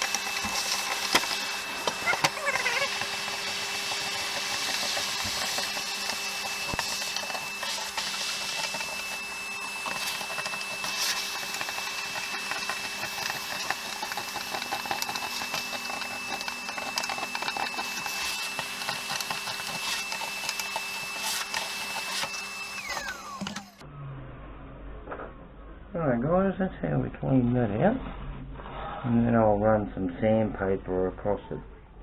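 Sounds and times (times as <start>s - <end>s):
power tool motor whining: 0.0s - 23.8s.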